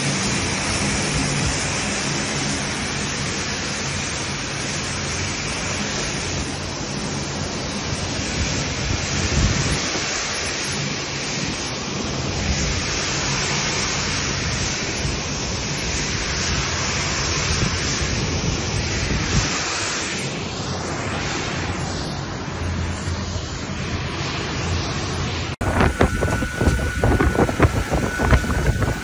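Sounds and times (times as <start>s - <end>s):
pressure washer spraying: 25.6s - 29.0s.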